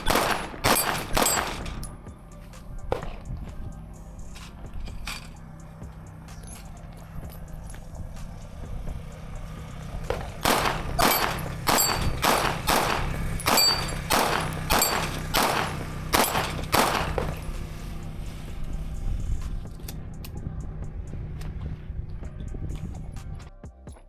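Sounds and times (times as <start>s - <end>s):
pistol shots: 0.0s - 1.9s, 10.1s - 17.4s.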